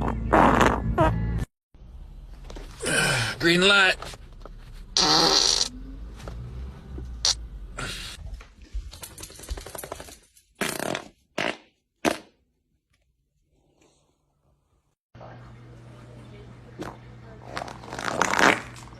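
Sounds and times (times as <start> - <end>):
loud farts: 0.0 - 1.5, 5.0 - 5.8, 10.6 - 12.3, 17.5 - 18.9.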